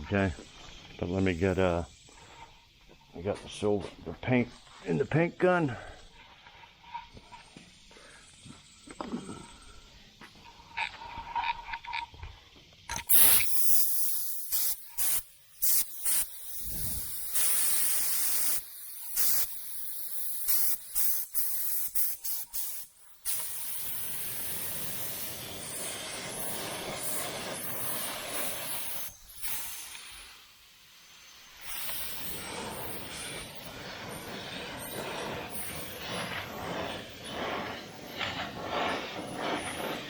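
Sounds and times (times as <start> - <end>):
paint spray gun hissing: 12.9 - 40.0.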